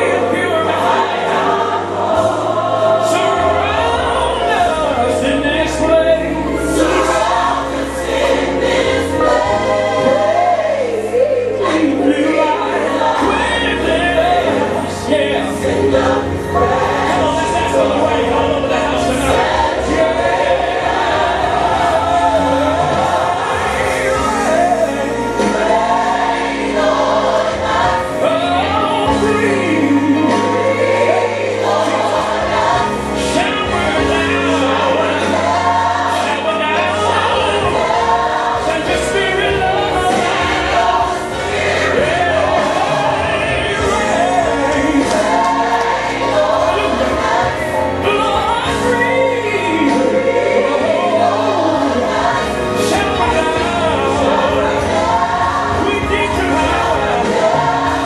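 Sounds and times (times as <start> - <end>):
gospel choir singing: 0.0 - 58.0.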